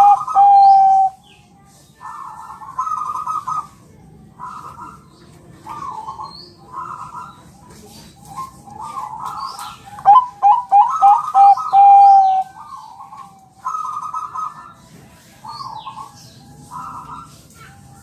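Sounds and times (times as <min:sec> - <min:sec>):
dove cooing: 0:00.0 - 0:01.2, 0:02.0 - 0:14.8.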